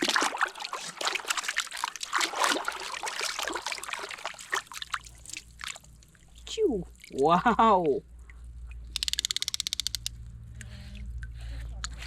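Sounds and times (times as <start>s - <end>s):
water trickling and splashing: 0.0s - 9.0s.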